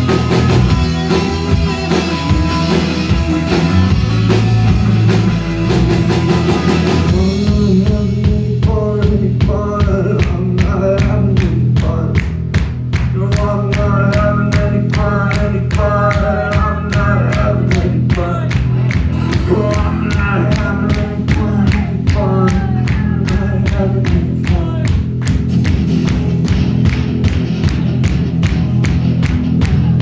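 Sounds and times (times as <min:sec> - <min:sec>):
live rock band playing: 0:00.0 - 0:30.0
person singing: 0:06.7 - 0:12.3, 0:13.0 - 0:25.1.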